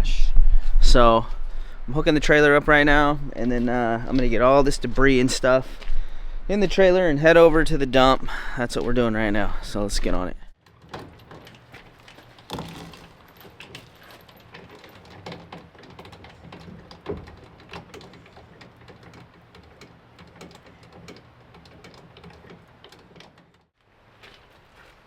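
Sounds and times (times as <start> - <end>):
light knocks and clicks: 10.6 - 23.6.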